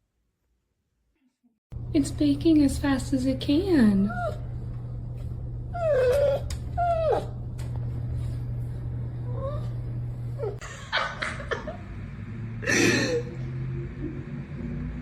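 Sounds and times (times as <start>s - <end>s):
low hum: 1.8s - 15.0s
dog whining: 4.0s - 4.6s, 5.7s - 7.4s, 9.2s - 9.8s.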